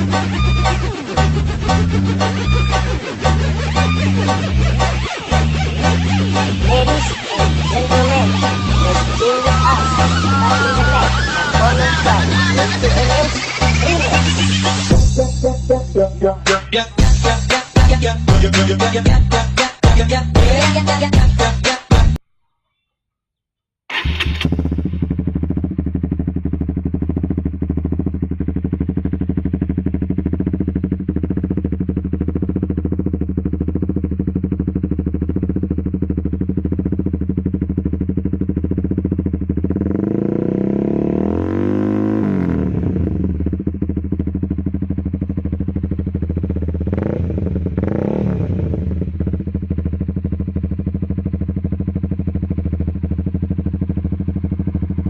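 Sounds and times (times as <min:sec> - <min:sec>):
motorcycle engine idling and revving: 0:00.0 - 0:22.2, 0:23.9 - 0:55.0.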